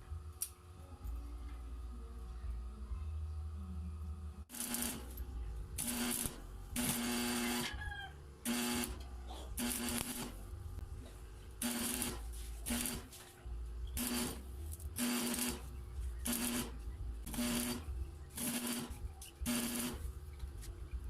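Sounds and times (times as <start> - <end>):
small electric motor humming: 4.5 - 7.8, 8.4 - 9.0, 9.6 - 10.6, 11.6 - 13.2, 13.9 - 20.2.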